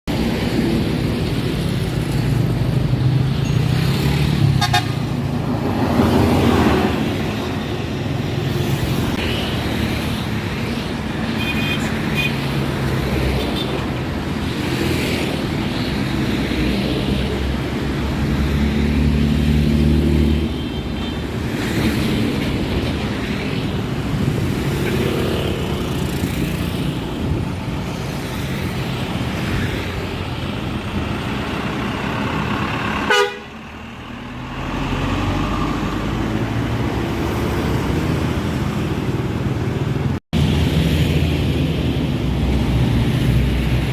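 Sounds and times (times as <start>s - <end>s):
bus engines running: 0.1s - 43.9s
musical horn toots: 33.1s - 33.5s.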